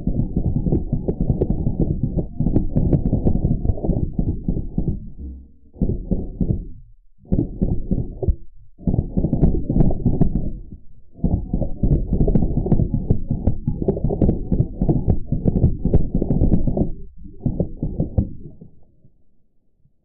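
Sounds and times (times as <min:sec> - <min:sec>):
deep muffled rumble: 0:00.0 - 0:18.6.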